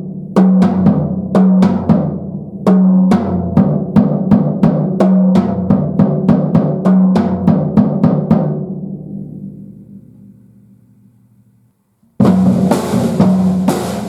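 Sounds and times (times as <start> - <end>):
drum hits: 12.2 - 14.0.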